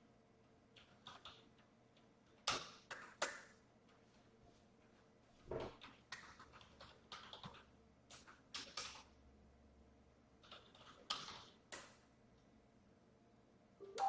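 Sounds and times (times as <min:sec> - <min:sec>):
faint typing on computer keyboard: 0:00.4 - 0:05.0, 0:05.7 - 0:09.3, 0:10.4 - 0:12.5.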